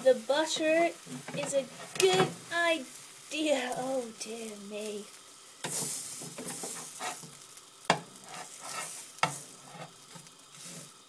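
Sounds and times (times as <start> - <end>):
batter sizzling in a frying pan: 0.0 - 11.0
spatula scraping a pan: 0.5 - 2.4, 5.6 - 11.0
spatula knocking on a pan: 7.9 - 8.2, 9.2 - 9.4.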